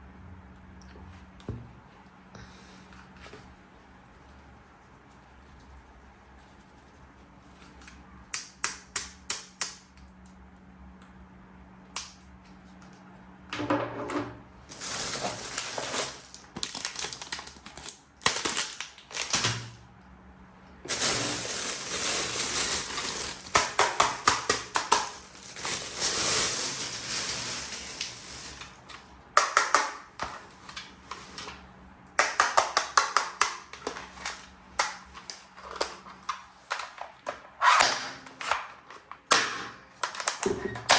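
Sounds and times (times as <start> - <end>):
packaging rustling: 14.7 - 19.6, 20.9 - 29.0.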